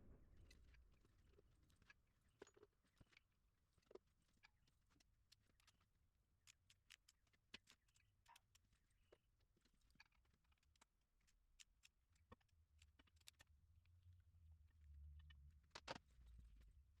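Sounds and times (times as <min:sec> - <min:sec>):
faint clicks and taps: 0:01.6 - 0:13.6, 0:15.2 - 0:16.7.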